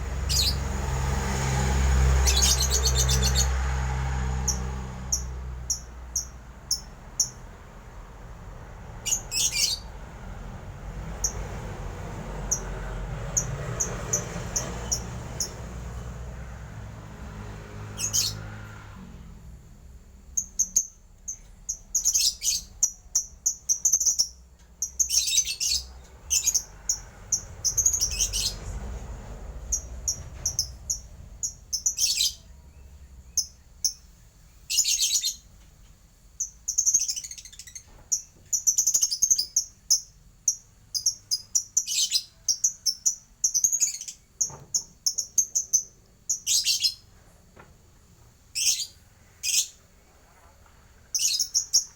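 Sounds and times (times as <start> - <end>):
small bird chirping: 0.0 - 0.8, 2.1 - 3.6, 4.4 - 7.6, 9.0 - 9.9, 12.5 - 16.1, 17.9 - 18.5, 20.2 - 47.2, 48.5 - 49.9, 51.0 - 51.9.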